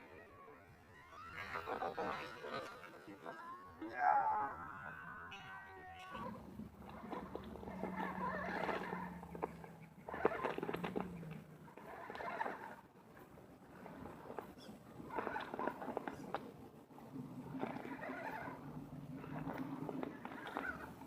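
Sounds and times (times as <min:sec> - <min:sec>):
electric motor and gearbox whining: 0:03.1 - 0:21.0
tires crunching on rock: 0:06.2 - 0:21.0.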